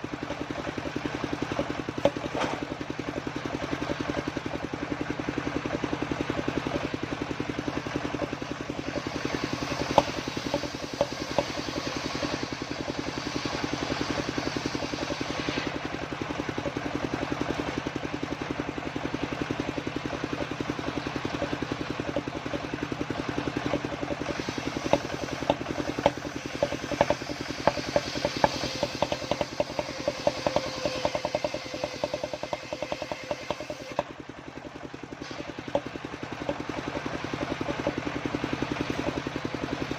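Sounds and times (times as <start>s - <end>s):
circular saw cutting wood: 0.0s - 39.9s
sharp ticks: 8.0s - 15.6s, 19.4s - 22.9s, 23.6s - 34.8s, 35.6s - 39.2s.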